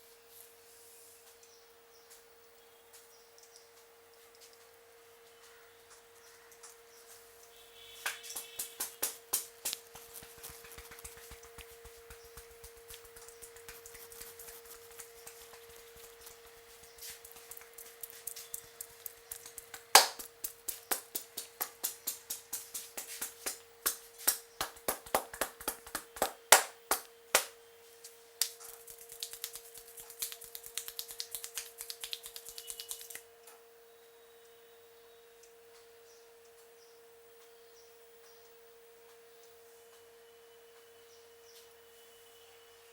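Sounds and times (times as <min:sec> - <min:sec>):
steady hum: 0:01.7 - 0:42.8
light quick tapping: 0:08.0 - 0:27.5
sharp slaps of hand massage: 0:08.0 - 0:27.6, 0:28.4 - 0:33.2.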